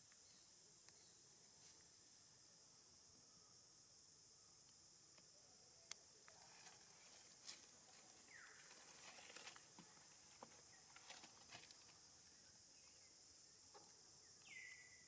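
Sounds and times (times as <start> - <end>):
steady high hiss: 0.0 - 15.0
rustles: 6.2 - 14.1.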